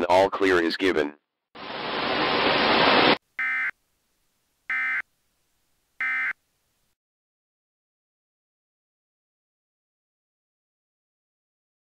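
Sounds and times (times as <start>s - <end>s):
static hiss: 1.6s - 3.2s.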